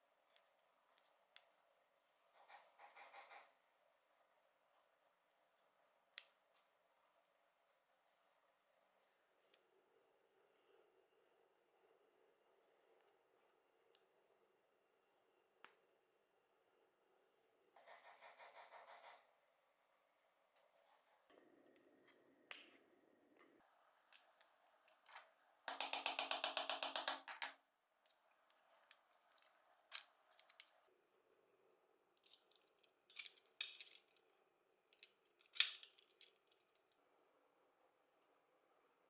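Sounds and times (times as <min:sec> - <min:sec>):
small hard parts clicking: 0:24.2 - 0:30.8.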